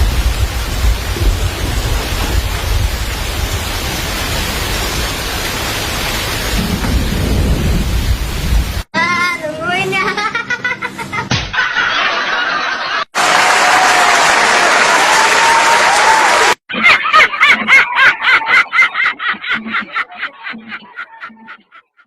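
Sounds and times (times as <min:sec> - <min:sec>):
quick rhythmic laughter: 0:16.7 - 0:22.0.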